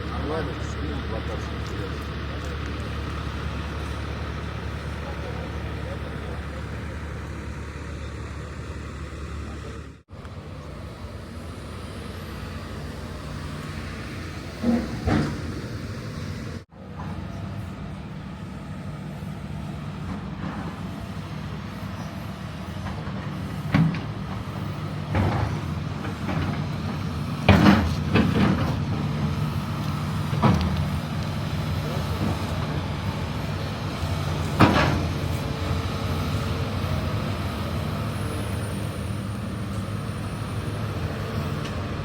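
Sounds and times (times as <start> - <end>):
heavy vehicle engine running: 0.0 - 42.0
knocks and clatters: 25.1 - 31.3.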